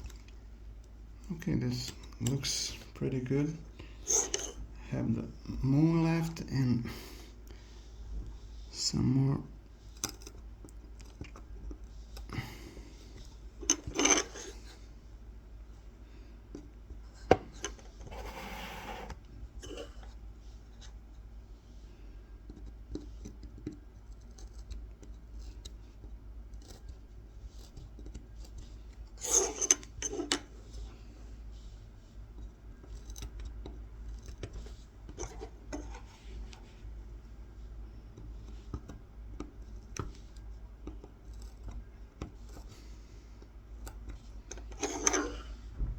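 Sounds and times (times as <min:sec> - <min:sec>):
low steady hum: 0:00.0 - 0:45.9
knife scratching wood: 0:04.0 - 0:04.6, 0:22.5 - 0:36.8, 0:38.1 - 0:45.6.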